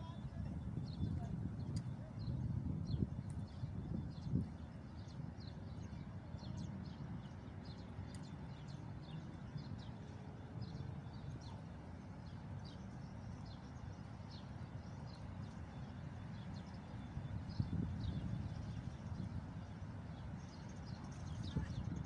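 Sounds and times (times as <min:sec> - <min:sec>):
steady low rumble: 0:00.0 - 0:12.8
small birds chirping: 0:00.0 - 0:22.0.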